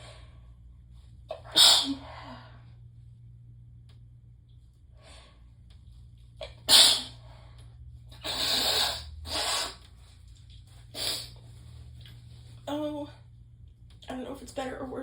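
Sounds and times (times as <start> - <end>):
woman sneezing: 1.4 - 2.1, 6.7 - 7.2.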